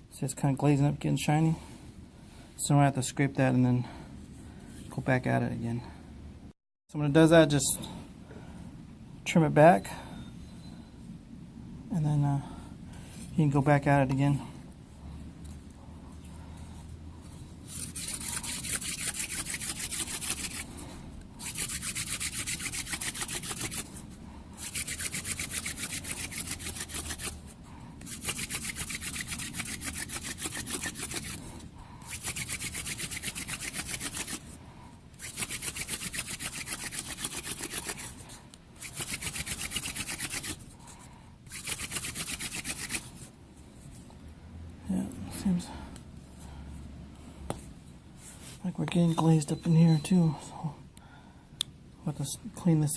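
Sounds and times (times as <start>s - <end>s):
hand drill rasping on wood: 17.8s - 20.6s, 21.4s - 23.9s, 24.6s - 27.4s, 28.0s - 31.4s, 32.1s - 34.4s, 35.2s - 38.1s, 38.8s - 40.6s.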